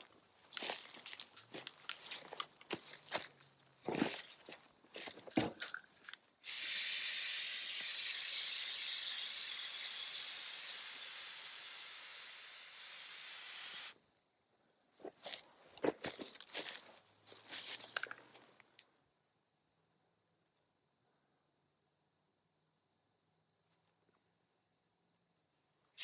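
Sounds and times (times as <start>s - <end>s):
aerosol spray can hissing: 6.4s - 14.0s.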